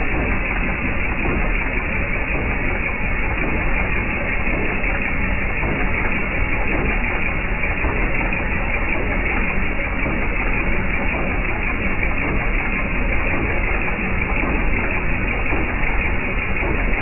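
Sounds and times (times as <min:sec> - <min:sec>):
engine running steadily: 0:00.0 - 0:17.0.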